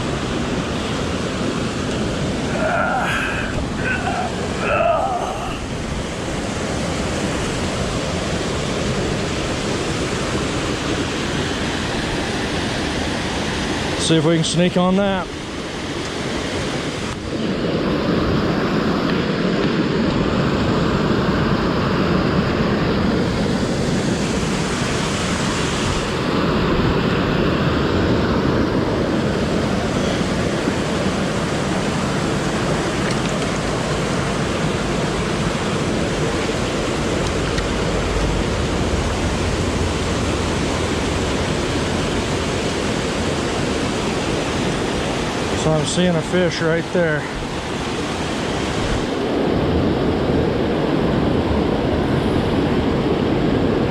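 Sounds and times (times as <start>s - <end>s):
creek water rushing over waterfall: 0.0s - 53.9s.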